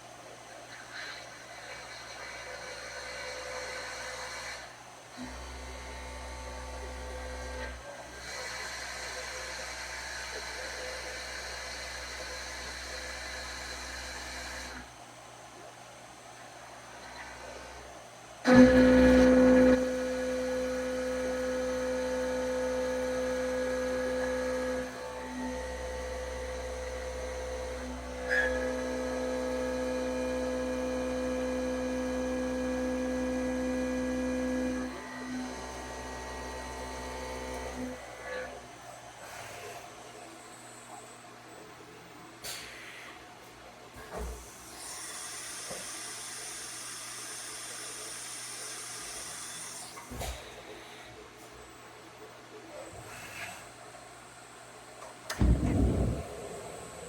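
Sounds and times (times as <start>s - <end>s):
mill machine humming: 44.0s - 57.0s
thump: 55.3s - 56.6s.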